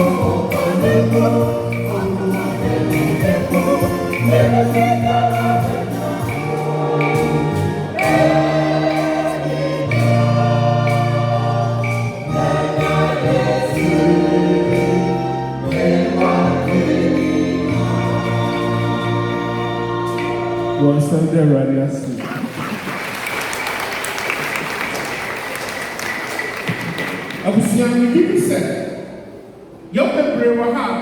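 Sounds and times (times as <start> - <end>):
band with bass and beat: 0.0 - 20.8
choir singing gospel: 0.0 - 21.3.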